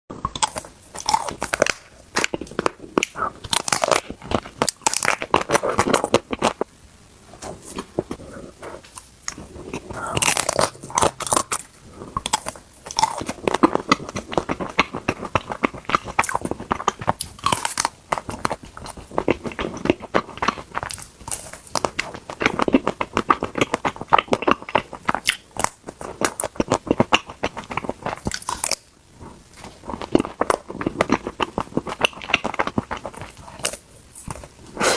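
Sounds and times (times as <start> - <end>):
wet mouth sounds: 0.1 - 6.6, 7.4 - 28.6, 29.9 - 34.9
ice cream crunching: 9.2 - 28.9.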